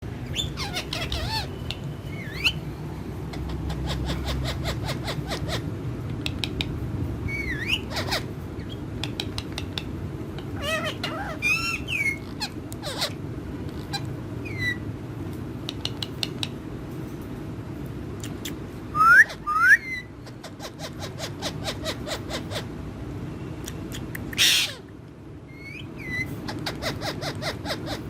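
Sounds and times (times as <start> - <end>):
low background hum: 0.0 - 28.0
parrots chirping and whistling: 0.2 - 5.7, 7.2 - 14.9, 18.2 - 22.8, 23.8 - 24.9, 25.5 - 28.0
parrot screeches: 10.6 - 13.2, 24.4 - 24.9.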